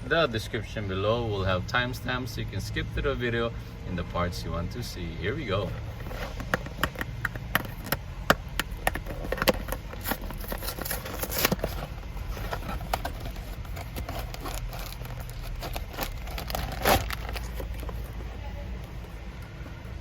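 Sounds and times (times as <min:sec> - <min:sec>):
packaging crinkling and crackling: 0:05.7 - 0:20.0.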